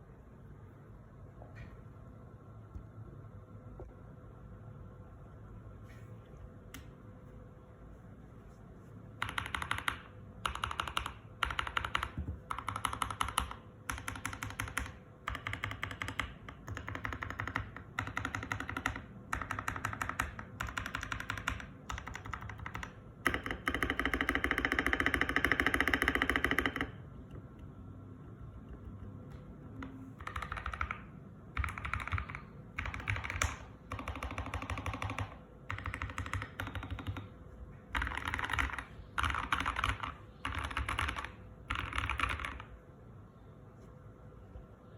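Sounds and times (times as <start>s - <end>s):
mechanical keyboard typing: 9.2s - 27.5s, 29.8s - 42.8s.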